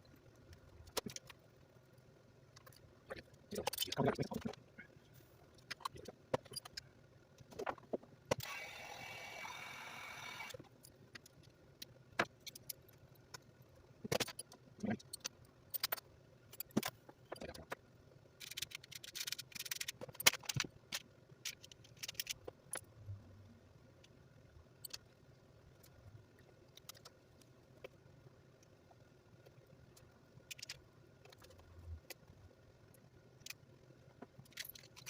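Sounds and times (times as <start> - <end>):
small parts and tools clattering: 0.5 - 1.4, 2.5 - 4.6, 5.5 - 8.8, 12.2 - 17.8, 18.4 - 22.9, 34.2 - 35.0.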